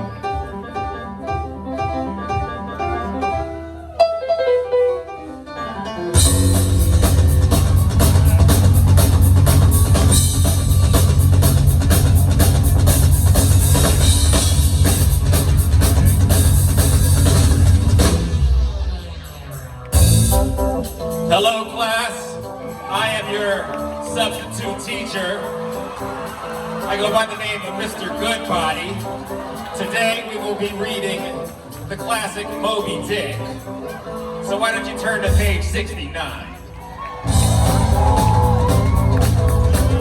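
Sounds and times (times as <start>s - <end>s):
live rock band playing: 0.0s - 40.0s
fast driving drums: 6.2s - 18.8s, 37.2s - 40.0s.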